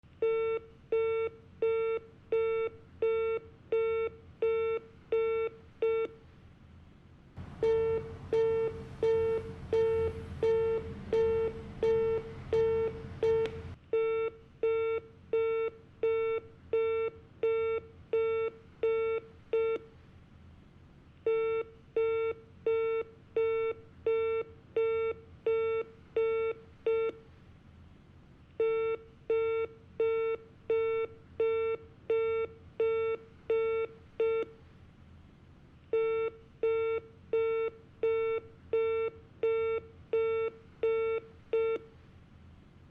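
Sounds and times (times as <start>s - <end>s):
hiss and low hum: 5.6s - 13.8s
telephone disconnected tone beeps: 7.6s - 19.8s.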